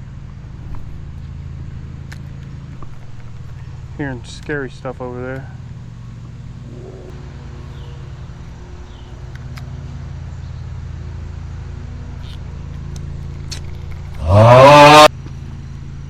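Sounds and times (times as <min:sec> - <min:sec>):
low motor hum: 0:00.0 - 0:16.0
loud rising cry: 0:06.6 - 0:07.2, 0:14.2 - 0:15.1.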